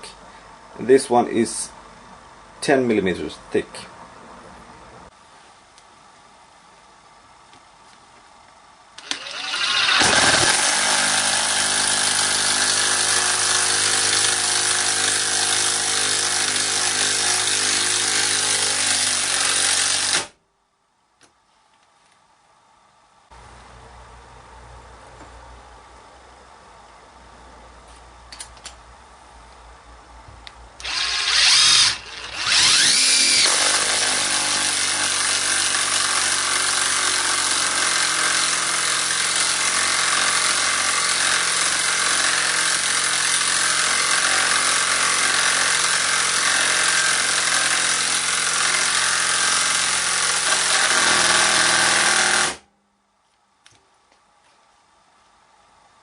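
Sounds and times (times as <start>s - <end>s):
impact driver hammering screw: 9.0s - 20.3s, 30.8s - 52.6s.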